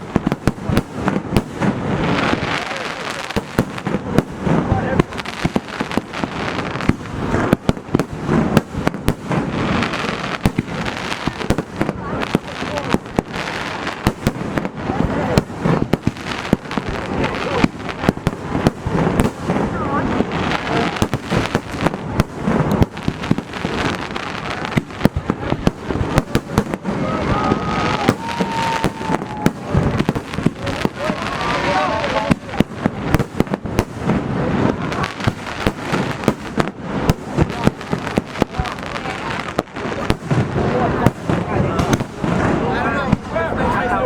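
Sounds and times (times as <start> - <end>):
fireworks bangs: 0.0 - 44.0
fireworks crackling: 0.0 - 44.0.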